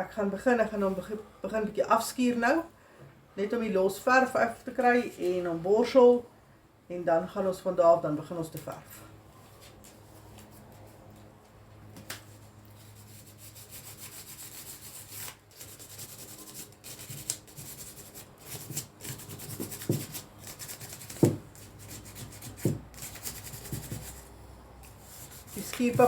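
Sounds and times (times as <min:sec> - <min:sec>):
sandpaper rubbing: 0:12.8 - 0:24.3, 0:24.9 - 0:26.0.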